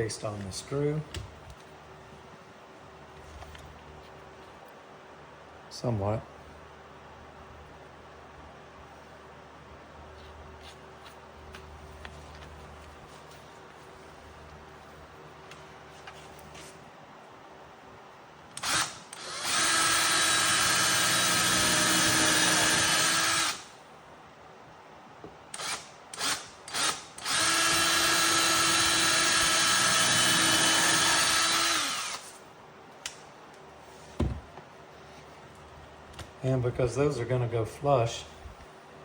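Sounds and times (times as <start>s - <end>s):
power drill boring holes: 18.6s - 23.7s, 25.5s - 32.4s.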